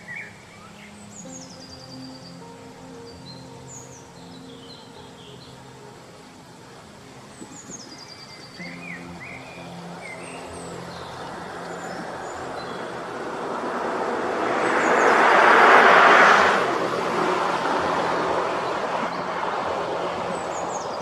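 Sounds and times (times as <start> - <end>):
birds chirping: 0.0 - 21.0
vehicle passing by: 9.6 - 21.0.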